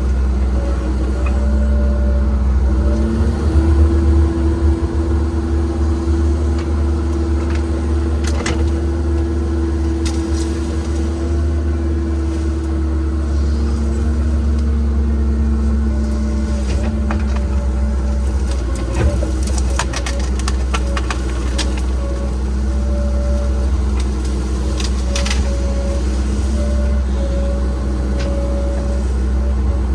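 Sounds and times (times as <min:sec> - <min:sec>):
excavator diesel engine running: 0:00.0 - 0:29.9.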